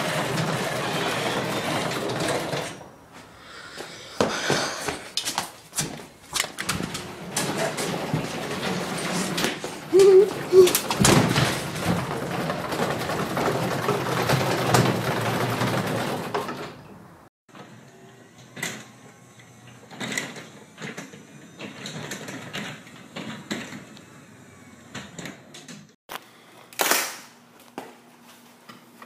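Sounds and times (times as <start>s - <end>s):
garage door opener rattling: 0.0s - 3.0s, 6.3s - 17.2s, 18.4s - 26.0s.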